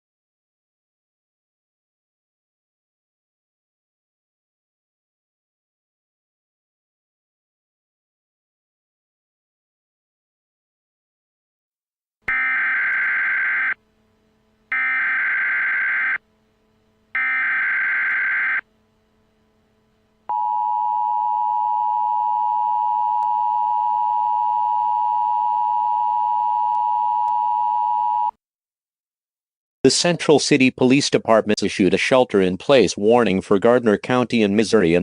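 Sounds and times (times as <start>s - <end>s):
data burst tones: 12.3s - 13.8s, 14.7s - 16.2s, 17.2s - 18.6s.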